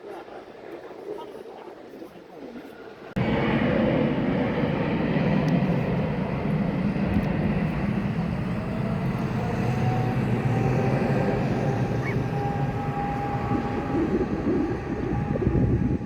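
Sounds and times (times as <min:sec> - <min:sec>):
jet airliner engines: 0:02.8 - 0:16.0
faint rising whine: 0:03.2 - 0:16.0.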